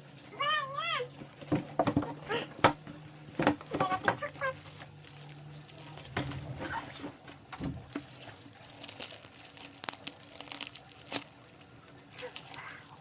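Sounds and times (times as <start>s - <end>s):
plastic packaging crinkling: 3.0s - 13.0s.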